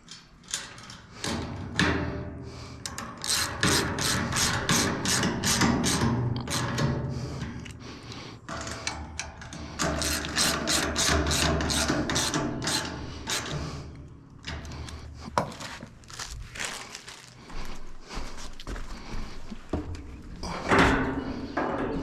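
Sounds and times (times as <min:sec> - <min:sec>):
ratchet wrench clicking: 0:02.9 - 0:06.8, 0:09.8 - 0:13.6.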